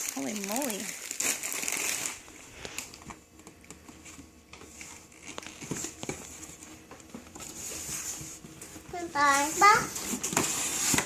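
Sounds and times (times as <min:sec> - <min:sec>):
snack packaging crinkling: 0:00.0 - 0:06.7.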